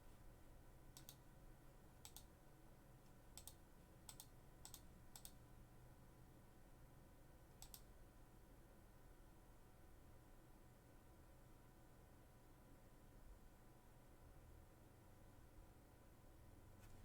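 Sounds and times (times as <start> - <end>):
faint computer clicks: 0.9 - 1.2, 2.0 - 2.3, 3.0 - 5.4, 7.6 - 7.9.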